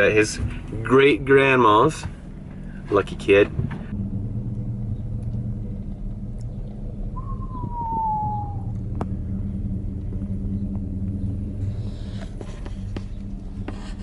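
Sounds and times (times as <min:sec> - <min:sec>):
road noise: 0:00.0 - 0:14.0
vehicle engine hum: 0:00.0 - 0:14.0
tone falling in pitch: 0:07.0 - 0:08.9.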